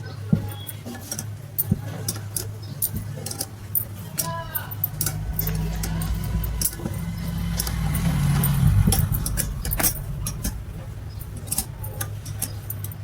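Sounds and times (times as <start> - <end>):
steady low hum: 3.8 - 13.0.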